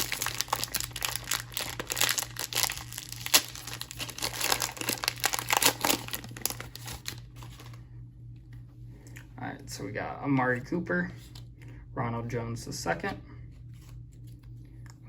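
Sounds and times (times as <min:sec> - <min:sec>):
plastic wrapper crinkling and tearing: 0:00.0 - 0:07.8.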